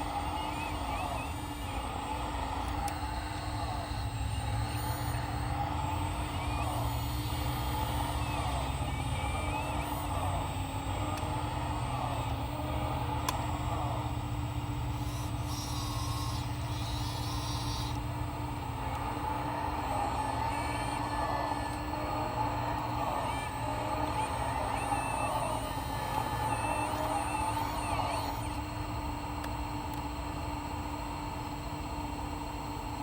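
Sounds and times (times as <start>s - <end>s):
hydraulic pump hum and whine: 0.0s - 33.0s.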